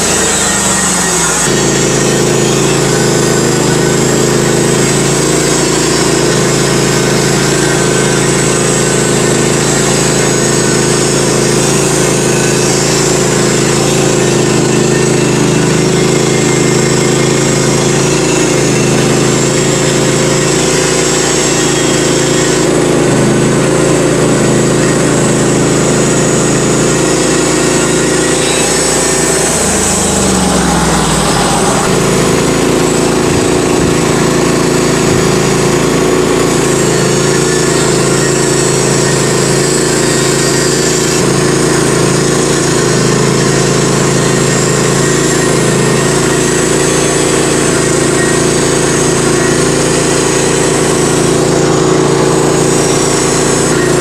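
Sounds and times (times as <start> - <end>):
band sawmill engine running: 0.0 - 54.0.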